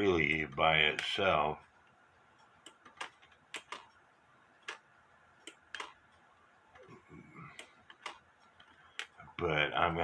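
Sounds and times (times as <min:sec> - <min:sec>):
mechanical clock ticking: 0:07.6 - 0:09.2.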